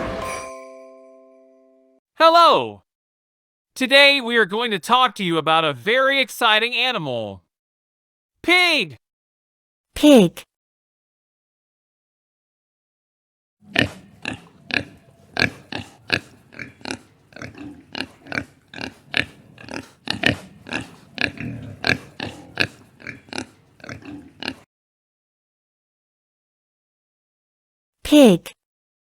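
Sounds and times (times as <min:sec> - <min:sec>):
pig oinking and grunting: 0:13.6 - 0:24.7.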